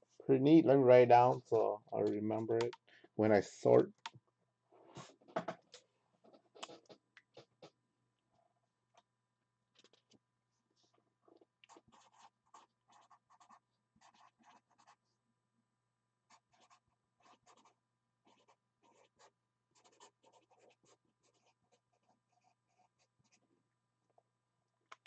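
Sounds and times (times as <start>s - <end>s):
pen scratching on paper: 11.7s - 15.0s, 16.3s - 23.4s.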